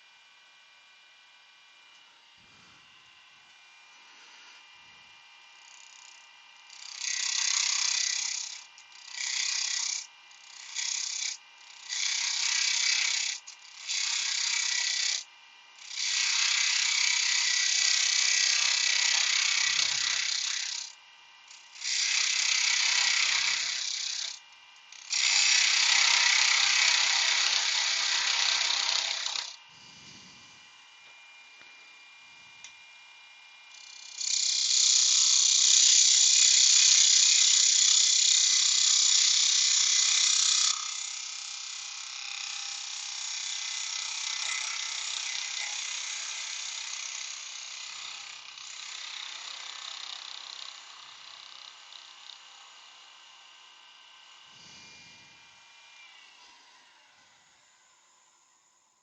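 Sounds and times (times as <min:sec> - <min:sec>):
lathe hum: 0:00.1 - 0:58.8
tool rasping on spinning wood: 0:05.6 - 0:30.6, 0:33.7 - 0:51.6.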